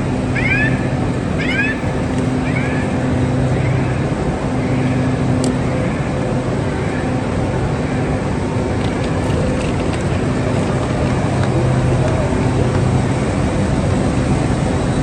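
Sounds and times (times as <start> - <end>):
dense wash of noise: 0.0 - 15.0
train engine humming: 0.0 - 15.0.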